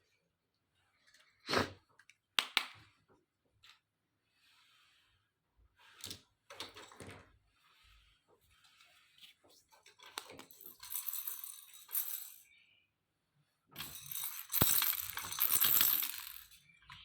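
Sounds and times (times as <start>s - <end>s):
plastic pieces clattering: 13.8s - 16.6s
plastic toy pieces clicking: 13.8s - 16.6s.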